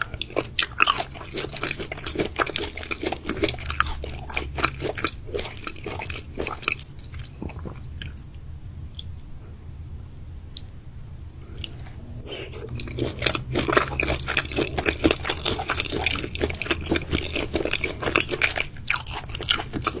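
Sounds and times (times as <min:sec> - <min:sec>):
person chewing raw meat: 0:00.0 - 0:08.2, 0:12.4 - 0:20.0.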